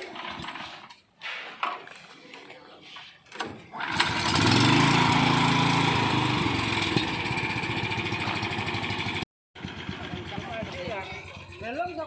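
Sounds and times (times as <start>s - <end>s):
water pump engine running: 3.8s - 12.0s.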